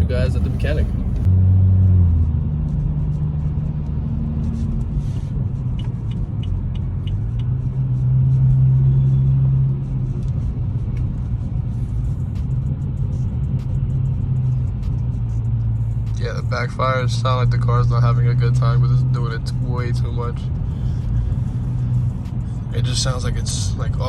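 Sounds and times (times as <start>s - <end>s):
car engine running: 0.0s - 1.3s, 18.6s - 24.0s
exhaust pops: 0.0s - 1.3s.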